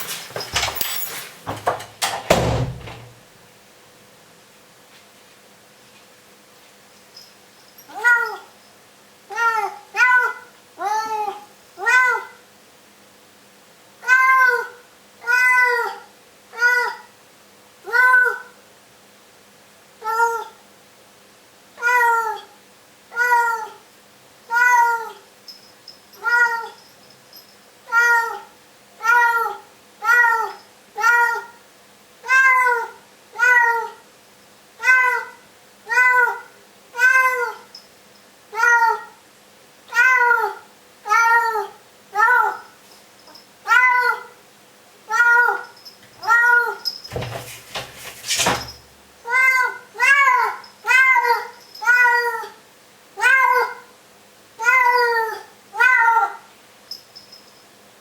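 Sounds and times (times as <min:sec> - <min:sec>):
cat meowing: 0:07.9 - 0:08.5, 0:14.0 - 0:16.0, 0:24.5 - 0:25.2, 0:26.2 - 0:26.8, 0:32.2 - 0:34.0, 0:34.8 - 0:37.7, 0:39.9 - 0:42.7, 0:43.7 - 0:44.3, 0:49.3 - 0:52.6, 0:54.6 - 0:56.4
brief clatter: 0:47.1 - 0:48.9.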